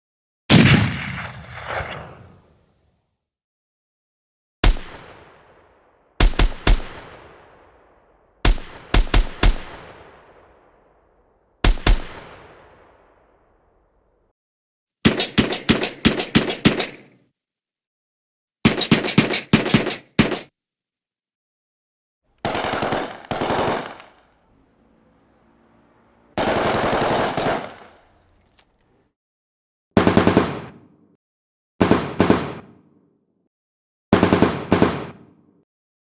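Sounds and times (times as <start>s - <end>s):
automatic gunfire bursts: 22.4s - 24.5s, 26.4s - 28.4s.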